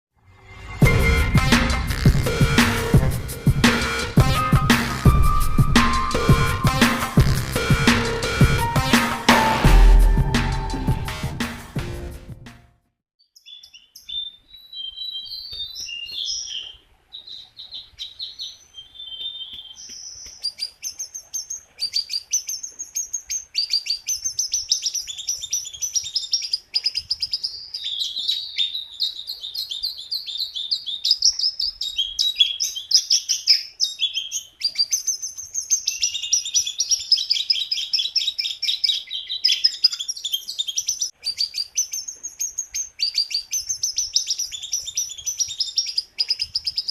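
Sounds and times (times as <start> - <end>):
songbird chirping and trilling: 13.2 - 46.9.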